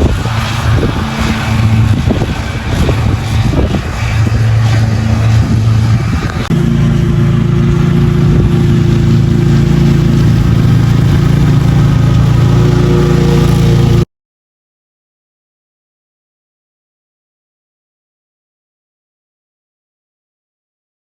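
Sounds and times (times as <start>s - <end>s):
lawn mower engine running: 0.0s - 14.0s.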